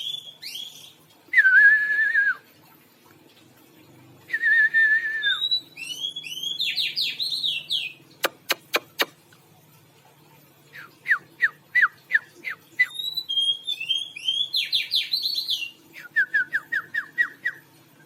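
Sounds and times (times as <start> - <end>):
songbird singing: 0.0 - 2.4, 4.3 - 9.1, 10.7 - 17.6.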